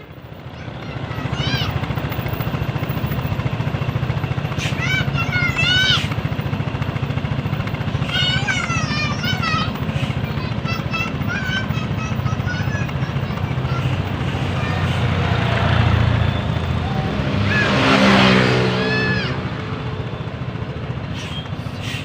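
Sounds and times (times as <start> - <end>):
engine and road noise: 0.0 - 22.0
vehicle passing close by: 13.7 - 20.9.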